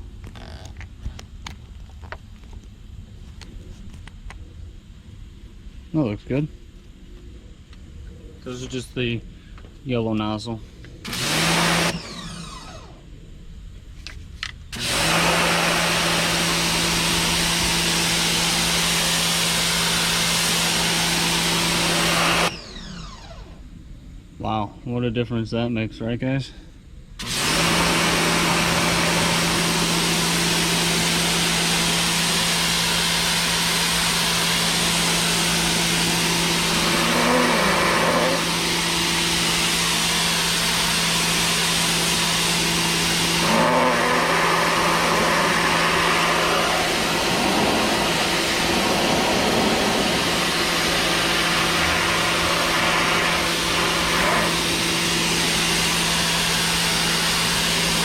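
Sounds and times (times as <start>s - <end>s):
pressure washer motor hum: 11.0s - 13.0s, 14.4s - 23.6s, 27.2s - 58.0s
water jet hissing: 36.0s - 39.3s, 42.8s - 55.8s.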